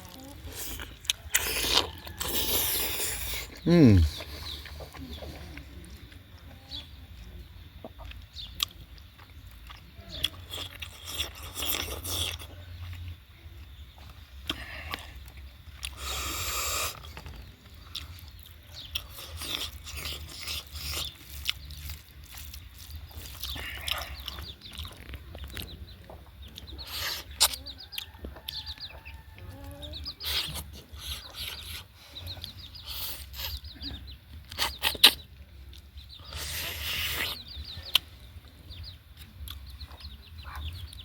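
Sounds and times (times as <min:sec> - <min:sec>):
chewing and mouth smacks: 0:00.0 - 0:06.5, 0:07.8 - 0:29.4, 0:30.0 - 0:33.8, 0:34.4 - 0:38.2, 0:39.1 - 0:41.0
chickens clucking: 0:00.0 - 0:41.0
breathy noise: 0:00.4 - 0:05.0.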